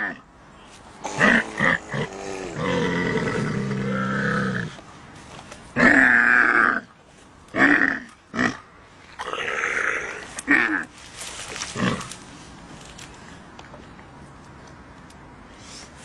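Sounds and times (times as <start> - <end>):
camel grunting and groaning: 0.0 - 0.2, 1.0 - 4.8, 5.8 - 6.9, 7.5 - 8.6, 9.2 - 11.0, 11.6 - 12.2.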